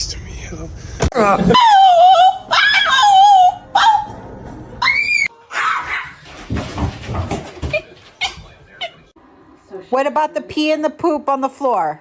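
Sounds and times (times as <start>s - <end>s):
dog whine-howling: 1.5s - 4.2s
shuffling and knocking: 6.1s - 9.0s.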